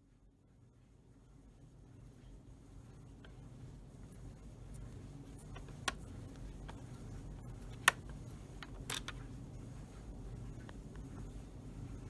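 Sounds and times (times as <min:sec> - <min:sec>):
low steady hum: 0:00.1 - 0:12.0
plastic laptop casing clicks: 0:05.5 - 0:06.1, 0:07.6 - 0:09.2.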